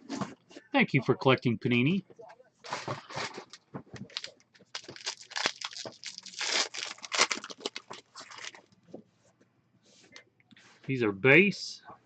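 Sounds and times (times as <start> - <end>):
card pack wrapper tearing: 2.7 - 8.6.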